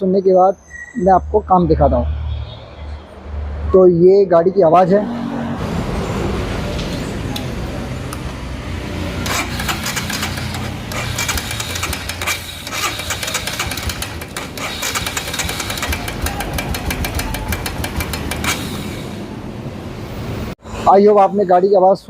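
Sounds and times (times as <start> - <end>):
motorcycle engine running: 9.2 - 18.6
rapid valve ticking: 9.3 - 19.2.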